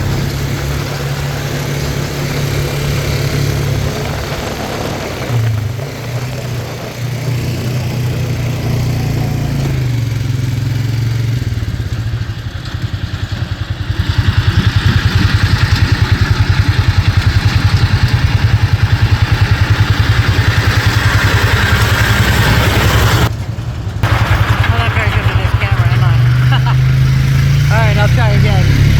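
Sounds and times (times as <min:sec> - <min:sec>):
tractor engine hum: 0:00.0 - 0:28.9
baler machinery pulsing: 0:24.0 - 0:28.9.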